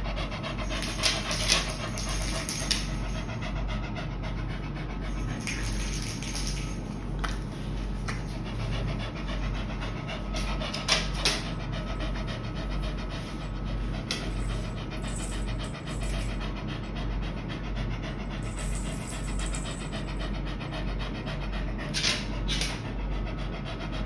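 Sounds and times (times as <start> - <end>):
dog panting: 0.0 - 24.0.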